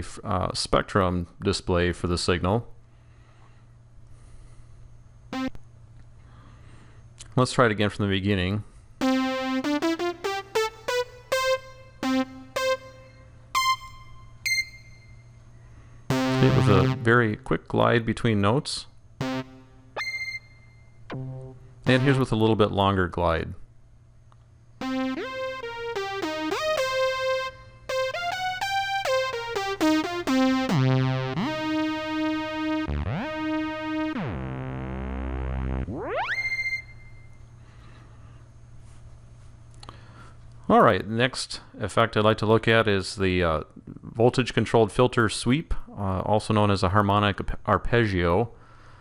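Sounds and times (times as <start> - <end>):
synthesizer notes gliding upward: 5.4 - 5.6, 9.0 - 14.8, 16.1 - 17.3, 19.2 - 20.5, 21.1 - 22.4, 24.8 - 37.2.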